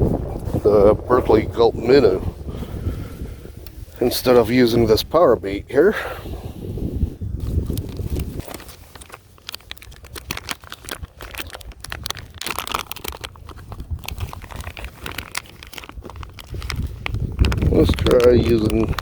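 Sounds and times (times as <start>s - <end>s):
plastic package crinkling: 7.4s - 19.0s.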